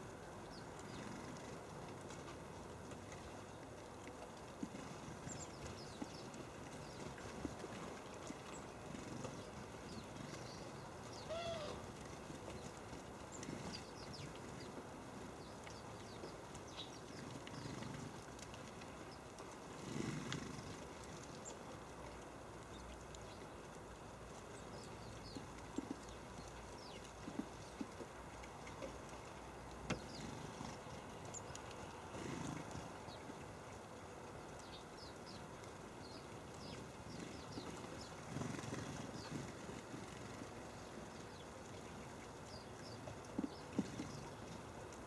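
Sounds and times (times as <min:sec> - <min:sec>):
small birds chirping: 0:04.8 - 0:07.3, 0:08.4 - 0:11.8, 0:12.5 - 0:18.1, 0:29.9 - 0:31.7, 0:34.6 - 0:44.5.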